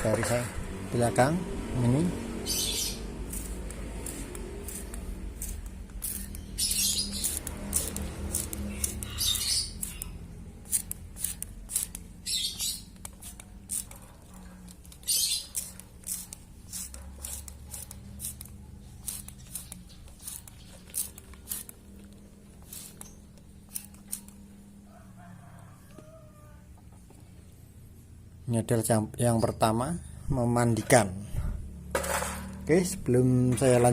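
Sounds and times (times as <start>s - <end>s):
spray bottle spritzing water: 3.2s - 14.1s, 14.7s - 24.4s.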